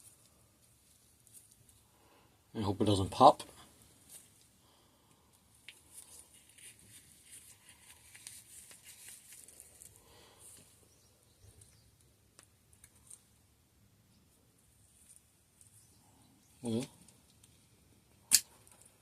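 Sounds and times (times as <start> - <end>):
faint clicks of parts handled: 5.3 - 10.8, 11.5 - 13.4, 18.2 - 19.0.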